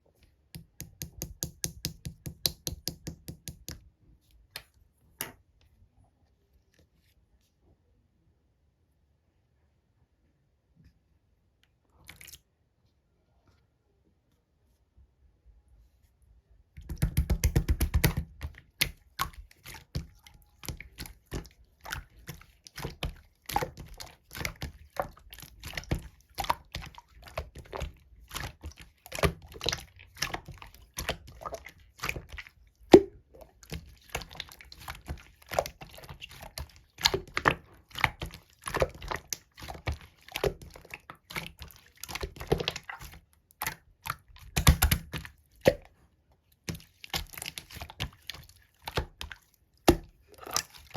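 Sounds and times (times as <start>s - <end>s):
slime squished by hand: 16.8s - 46.0s, 46.6s - 50.9s.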